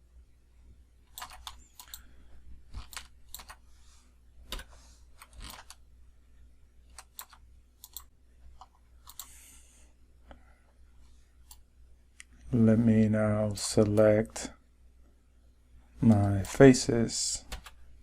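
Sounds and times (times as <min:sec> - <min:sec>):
steady low hum: 0:00.0 - 0:18.0
keyboard and mouse clicks: 0:01.1 - 0:02.1, 0:02.7 - 0:03.6, 0:04.4 - 0:05.8, 0:06.9 - 0:09.4, 0:13.6 - 0:14.1, 0:16.0 - 0:16.7, 0:17.4 - 0:17.8.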